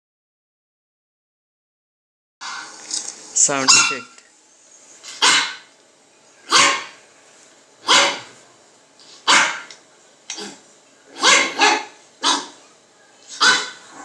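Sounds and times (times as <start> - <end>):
dog barking: 3.7 - 4.1, 5.2 - 5.7, 6.5 - 7.0, 7.8 - 8.3, 9.2 - 9.7, 11.1 - 12.6, 13.3 - 14.0.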